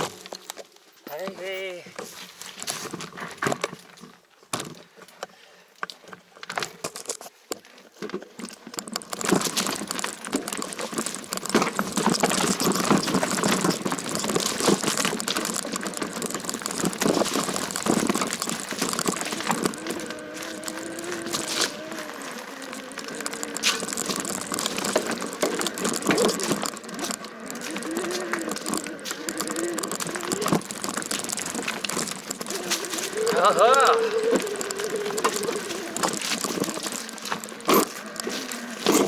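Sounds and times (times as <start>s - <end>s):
bike tyres rattling on dirt trail: 0.0s - 5.2s, 5.9s - 39.0s
clicks: 8.7s - 39.0s.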